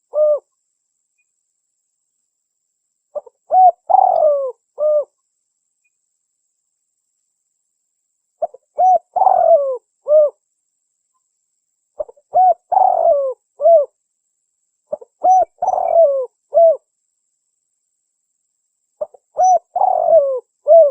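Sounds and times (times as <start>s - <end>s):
dove cooing: 0.0s - 0.5s, 3.2s - 5.2s, 8.4s - 10.4s, 12.0s - 13.9s, 14.9s - 16.8s, 19.0s - 20.9s.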